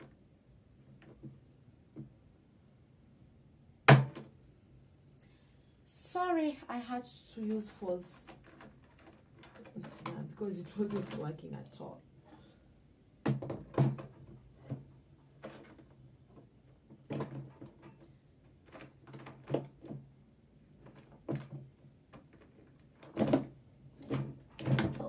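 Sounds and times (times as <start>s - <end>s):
sewing machine knocks and clunks: 13.2s - 15.8s.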